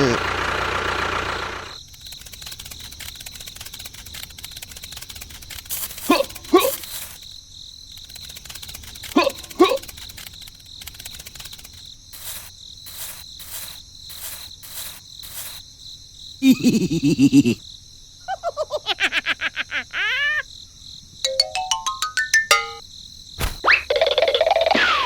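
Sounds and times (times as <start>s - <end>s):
cricket-like chirps: 1.7s - 21.2s
beeps stepping up in pitch: 21.3s - 22.8s.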